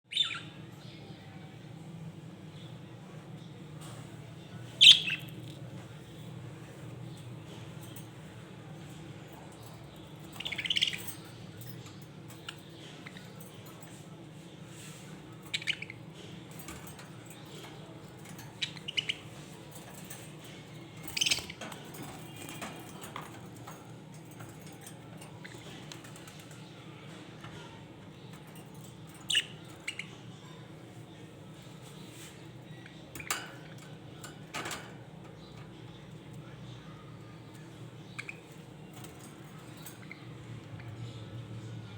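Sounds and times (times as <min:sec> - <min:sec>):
low background hum: 0:00.1 - 0:41.9
budgerigars chirping: 0:04.8 - 0:05.3, 0:10.3 - 0:11.2, 0:15.5 - 0:16.0, 0:18.5 - 0:19.5, 0:21.0 - 0:21.6.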